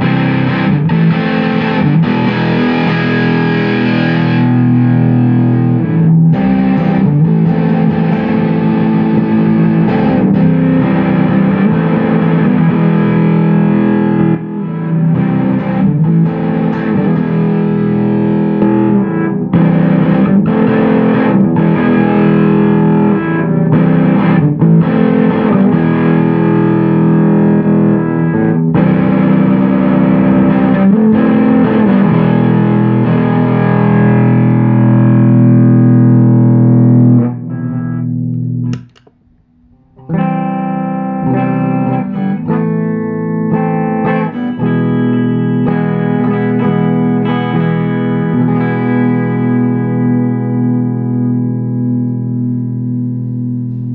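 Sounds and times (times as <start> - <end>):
distorted electric guitar: 0.0 - 53.9.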